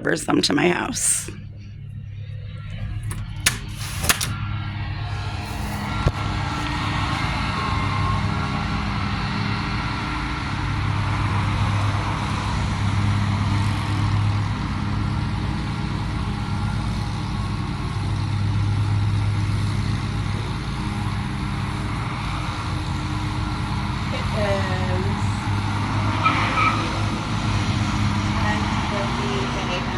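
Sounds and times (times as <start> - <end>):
vehicle engine humming: 1.2 - 14.0.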